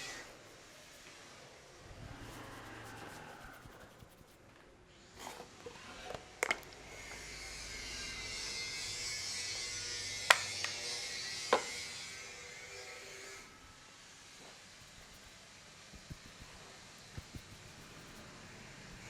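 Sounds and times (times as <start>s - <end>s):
hands rubbing hair and scalp: 2.1s - 4.6s, 14.5s - 19.0s.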